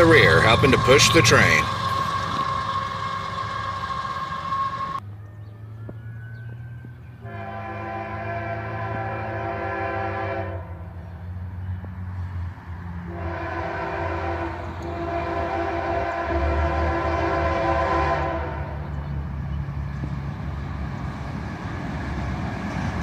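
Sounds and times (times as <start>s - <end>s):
locomotive air horn: 0.0s - 5.0s, 7.2s - 11.0s, 13.0s - 18.9s
train low rumble: 0.0s - 23.0s.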